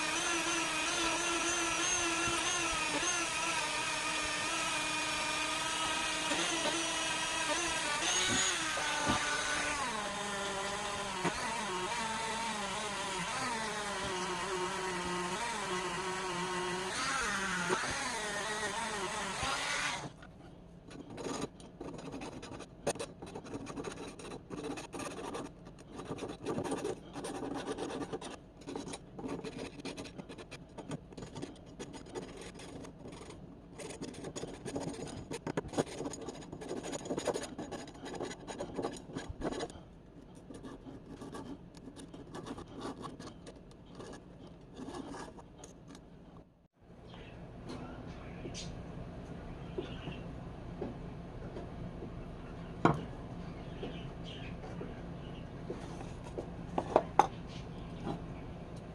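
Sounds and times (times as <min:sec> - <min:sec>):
power tool running: 0:00.0 - 0:20.2.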